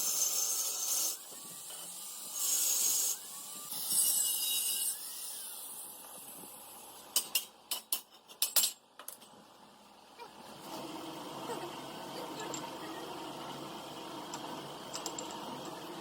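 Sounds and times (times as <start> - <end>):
sharp clicks and clinks: 14.9 - 15.8.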